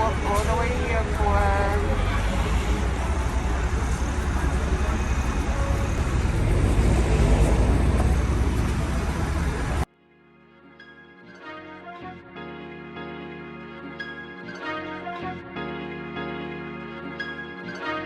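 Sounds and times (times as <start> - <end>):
city street traffic rumble: 0.0 - 9.9.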